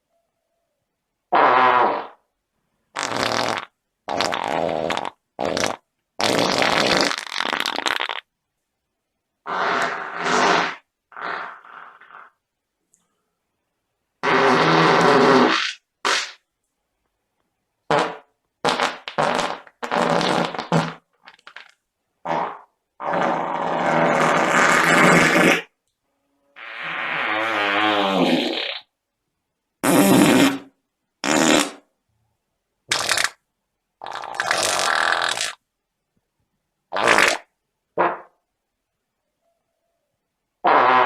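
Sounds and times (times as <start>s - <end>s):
fart sound effects: 1.3s - 2.3s, 2.9s - 8.3s, 9.4s - 12.4s, 14.2s - 16.4s, 17.9s - 25.8s, 26.6s - 28.9s, 29.8s - 31.9s, 32.9s - 33.4s, 34.0s - 35.6s, 36.9s - 38.4s, 40.6s - 41.0s.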